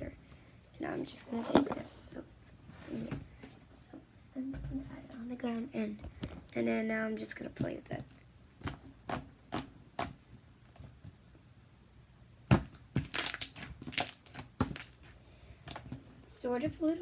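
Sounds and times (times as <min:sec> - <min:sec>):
slime popping and crackling: 0:12.5 - 0:15.1.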